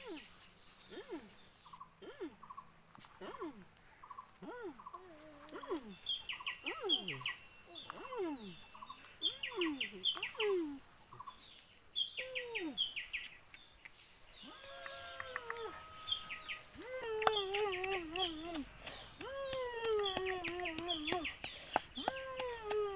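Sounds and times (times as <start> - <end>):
insects droning: 0.0 - 22.9
long wavering call: 14.4 - 21.4
falling calls: 14.4 - 22.4.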